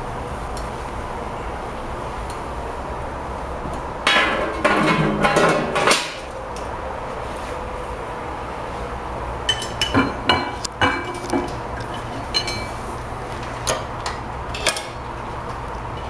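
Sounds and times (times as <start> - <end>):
metal stove clinking: 4.0 - 6.3, 9.5 - 12.8.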